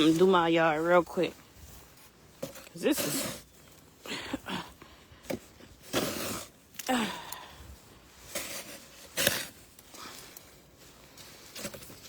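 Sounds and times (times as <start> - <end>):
woman sighing: 6.8 - 7.7
woman breathing hard: 6.9 - 7.8.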